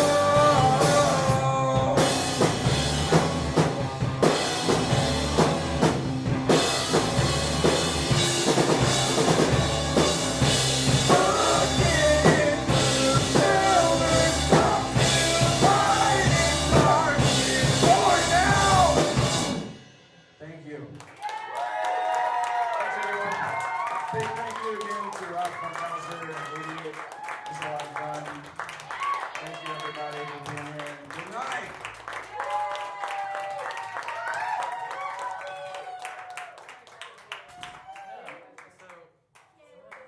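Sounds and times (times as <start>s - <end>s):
person singing: 0.0s - 2.5s, 10.9s - 19.3s
live rock band playing: 0.0s - 20.2s.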